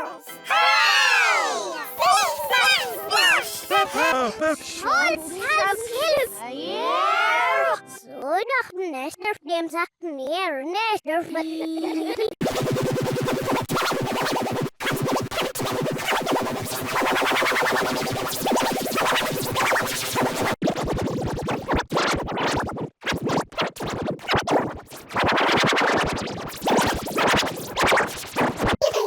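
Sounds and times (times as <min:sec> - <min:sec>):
distorted stuttering music: 0:12.4 - 0:20.9.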